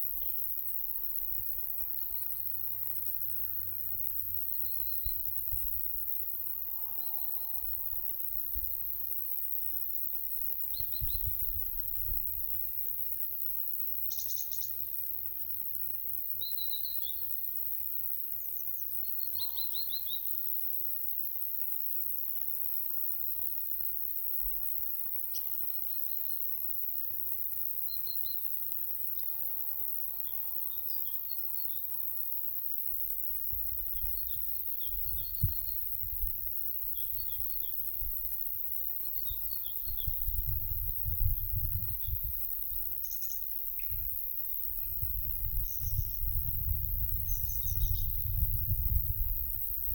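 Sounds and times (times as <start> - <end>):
insect hiss: 0.0 - 49.9
songbirds chirping: 14.0 - 14.9, 18.4 - 20.3
wind buffeting microphone: 39.8 - 42.9, 43.8 - 49.9.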